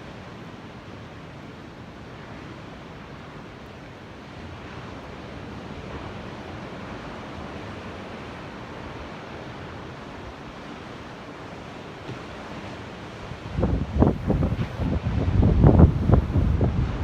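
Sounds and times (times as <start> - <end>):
ocean surf washing: 0.0 - 17.0.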